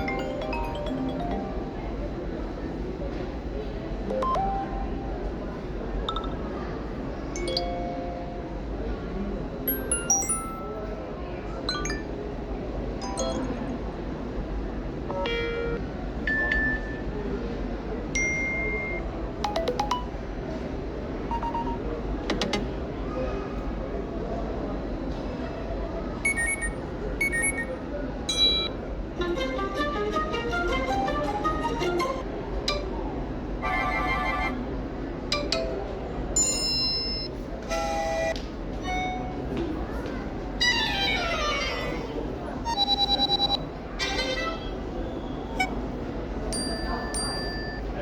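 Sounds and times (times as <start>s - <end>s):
plucky notification notes: 0.0s - 2.0s, 4.1s - 5.0s, 7.4s - 8.4s, 13.0s - 13.8s, 19.5s - 20.2s
steady background hum: 0.0s - 48.0s
phone alert beeps: 4.1s - 4.9s, 18.4s - 20.1s, 21.3s - 21.8s, 26.3s - 27.7s, 28.3s - 28.8s, 42.7s - 43.6s.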